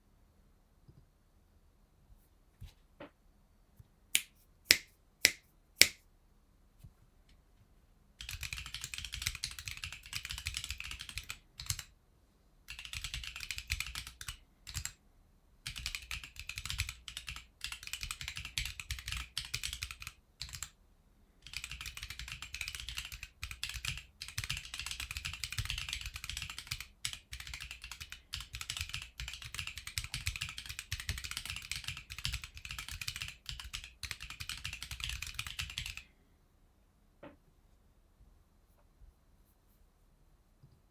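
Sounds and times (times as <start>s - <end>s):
rapid keyboard key clacks: 8.2s - 11.9s, 12.7s - 15.0s, 15.6s - 20.7s, 21.4s - 36.0s.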